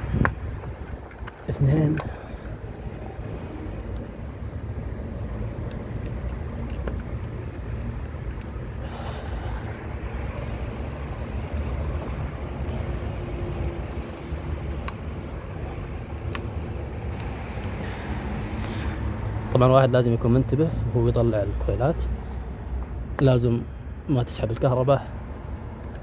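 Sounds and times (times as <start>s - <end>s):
low background rumble: 0.0s - 19.6s.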